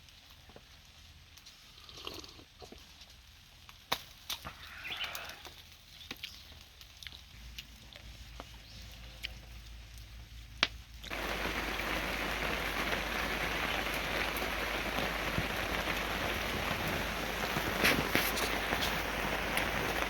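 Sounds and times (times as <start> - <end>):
rainfall hiss: 7.4 - 20.0.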